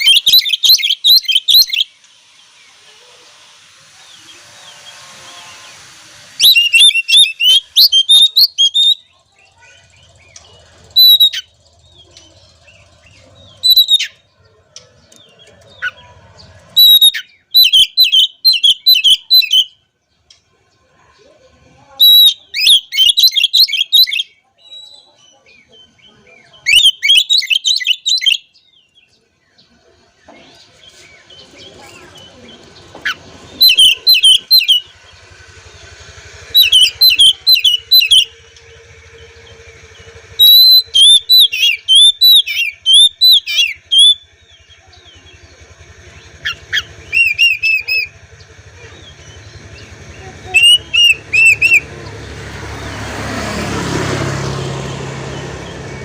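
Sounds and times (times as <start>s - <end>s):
bird singing whistled phrases: 0.0s - 2.0s, 6.4s - 12.0s, 13.5s - 14.2s, 16.8s - 19.8s, 21.8s - 25.2s, 26.7s - 28.5s, 33.5s - 35.0s, 36.5s - 38.4s, 40.3s - 45.3s, 46.4s - 48.1s, 49.2s - 51.9s.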